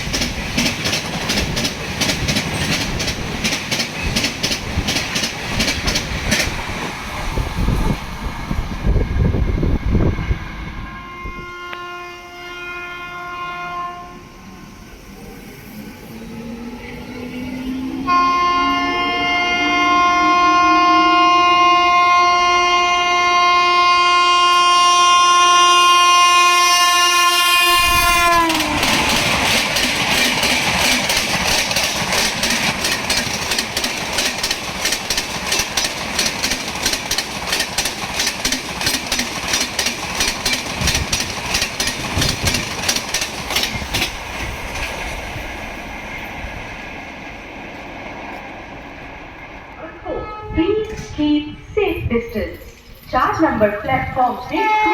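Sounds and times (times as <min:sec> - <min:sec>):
train wheels clattering over rail joints: 0:00.0 - 0:07.0, 0:28.4 - 0:45.5
train horn blast: 0:10.7 - 0:15.0, 0:17.6 - 0:29.1, 0:49.8 - 0:51.6.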